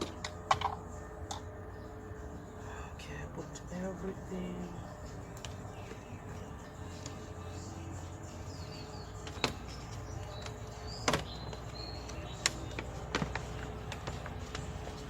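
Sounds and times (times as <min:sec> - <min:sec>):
steady low hum: 0:00.0 - 0:15.0
car door parts clicking: 0:09.2 - 0:14.3.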